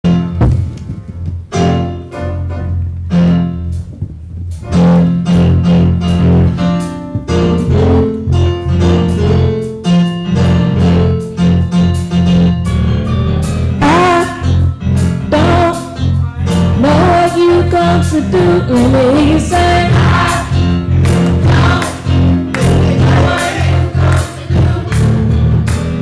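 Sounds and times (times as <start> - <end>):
bass line: 0.0 - 26.0
keyboard: 0.0 - 26.0
drum strokes: 18.2 - 26.0.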